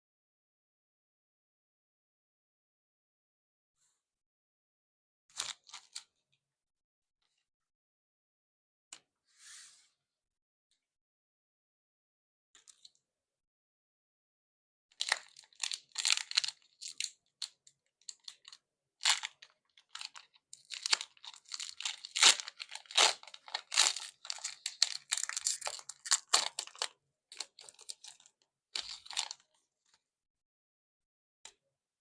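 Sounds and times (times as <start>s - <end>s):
foil pack ripping and crinkling: 20.7s - 26.9s.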